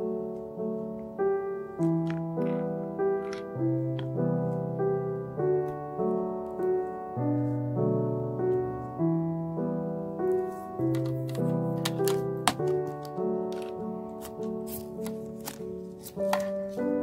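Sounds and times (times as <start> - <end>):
soft piano chords: 0.0 - 17.0.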